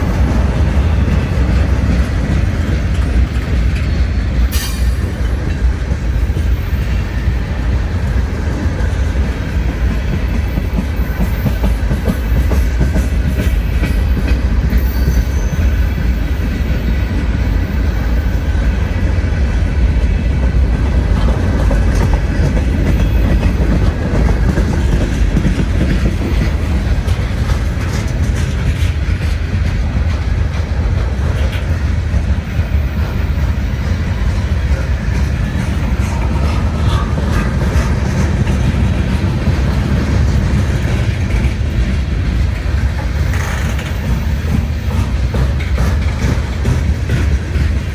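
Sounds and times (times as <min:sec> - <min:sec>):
freight train wheels rumbling: 0:00.0 - 0:47.9.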